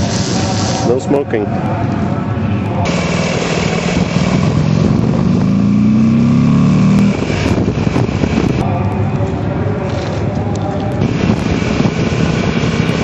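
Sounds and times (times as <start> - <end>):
background traffic: 0.0 - 13.0
motorcycle engine accelerating: 2.5 - 10.3, 11.0 - 13.0.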